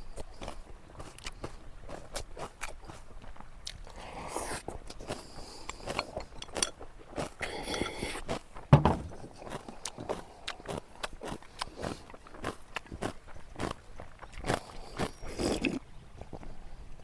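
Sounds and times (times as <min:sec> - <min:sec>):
crunchy chewing: 0:00.0 - 0:16.6
loud knock: 0:08.7 - 0:09.2.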